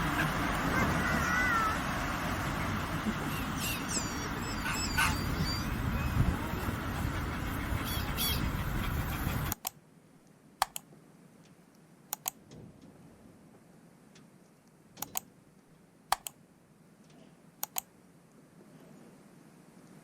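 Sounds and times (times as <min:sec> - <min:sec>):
sharp clicks in pairs: 0:09.5 - 0:09.8, 0:10.6 - 0:10.9, 0:12.1 - 0:12.5, 0:15.0 - 0:15.3, 0:16.1 - 0:16.4, 0:17.6 - 0:17.9.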